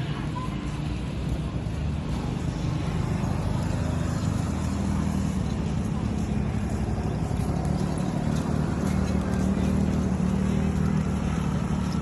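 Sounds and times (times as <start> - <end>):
engine running steadily: 0.0 - 12.0.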